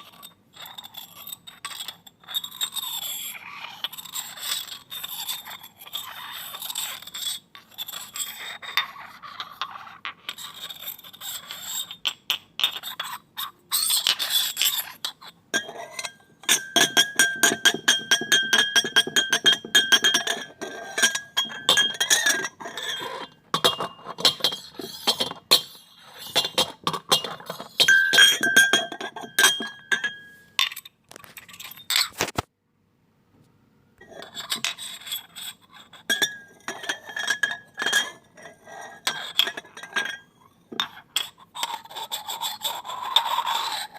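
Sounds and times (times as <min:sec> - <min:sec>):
glass pieces clinking and scraping: 0:15.6 - 0:32.3.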